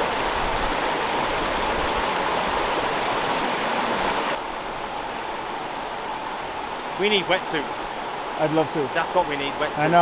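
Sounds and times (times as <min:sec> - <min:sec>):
river water rushing over rocks: 0:00.0 - 0:10.0.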